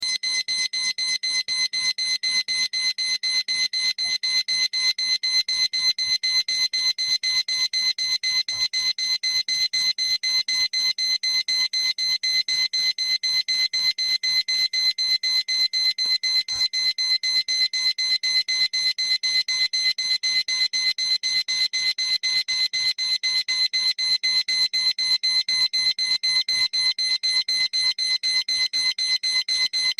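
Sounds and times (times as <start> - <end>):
alarm clock beeping: 11.4 - 23.0.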